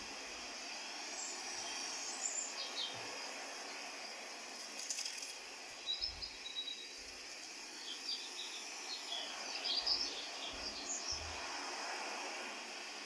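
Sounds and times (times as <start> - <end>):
steady outdoor hiss: 0.0 - 13.0
birds chirping: 5.8 - 7.0, 7.8 - 11.8.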